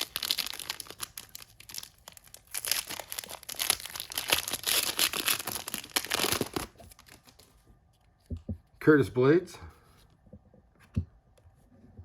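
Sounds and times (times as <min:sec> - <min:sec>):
plastic wrapper tearing and crinkling: 0:00.0 - 0:07.5.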